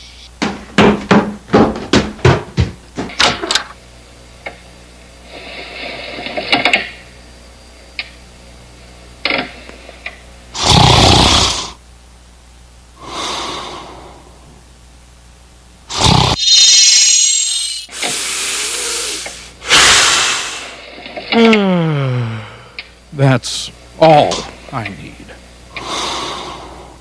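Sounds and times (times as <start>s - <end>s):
knocks: 0.4s - 3.4s
loud breathy snoring: 10.6s - 11.8s, 15.9s - 20.8s.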